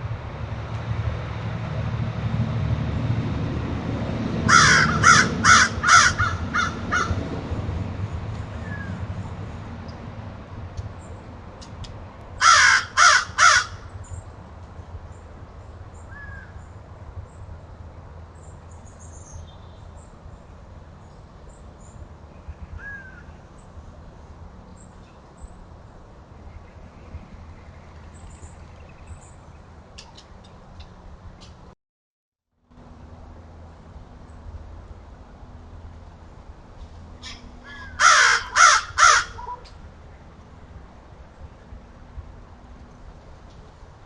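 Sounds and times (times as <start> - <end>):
steady low hum: 0.0 - 31.4
loud bird call: 4.5 - 7.2, 8.6 - 9.0, 12.4 - 14.2, 21.8 - 23.6, 37.2 - 39.8.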